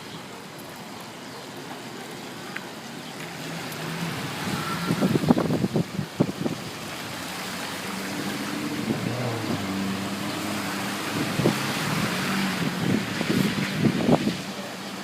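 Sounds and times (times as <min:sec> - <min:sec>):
water rushing from tyres: 0:00.0 - 0:15.0
car engine humming: 0:02.8 - 0:14.9.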